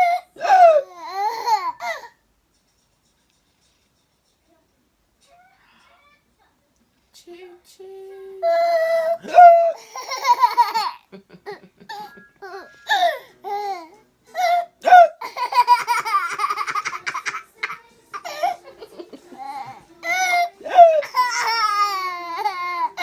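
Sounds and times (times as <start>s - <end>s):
baby laughing and squealing: 19.4s - 23.0s.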